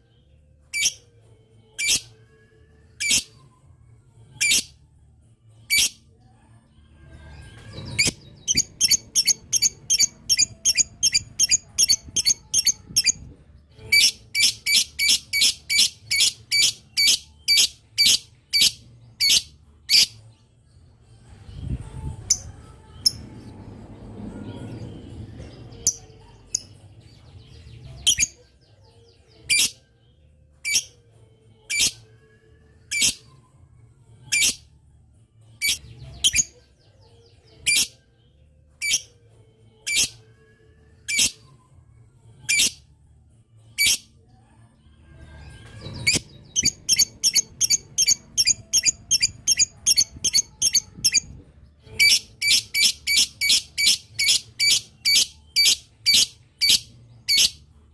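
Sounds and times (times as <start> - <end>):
lovebird chirping: 7.9 - 13.2, 13.8 - 20.2, 45.9 - 51.3, 51.9 - 57.6.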